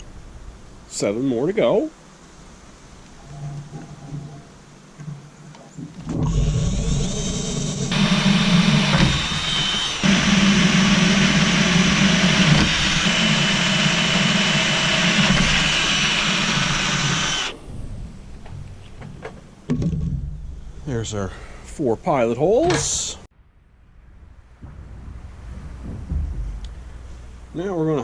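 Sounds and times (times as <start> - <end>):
electric drill boring through steel: 6.2 - 17.6.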